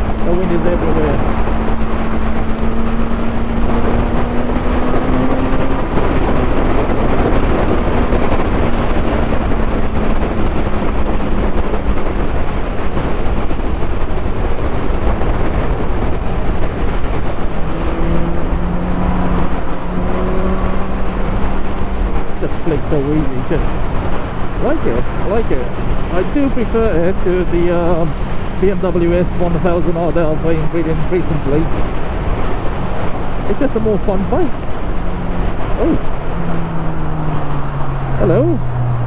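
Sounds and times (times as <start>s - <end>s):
motorcycle engine running: 0.0s - 22.5s
wind rushing over microphone: 0.0s - 39.0s.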